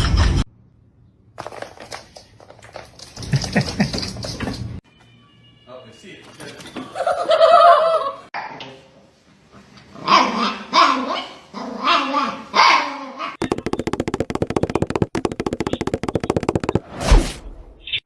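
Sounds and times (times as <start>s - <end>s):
fast even pulsing sound: 13.4s - 16.9s.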